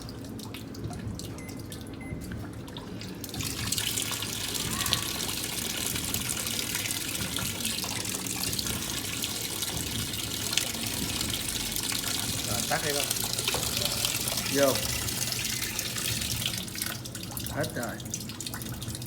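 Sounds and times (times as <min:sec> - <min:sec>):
washing machine filling with water: 0:00.0 - 0:19.0.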